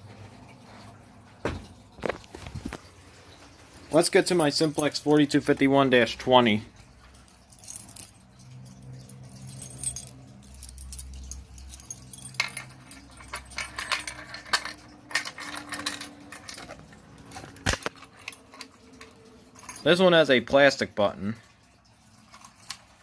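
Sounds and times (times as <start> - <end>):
keys jangling: 2.0 - 5.8, 6.8 - 20.0, 22.1 - 23.0.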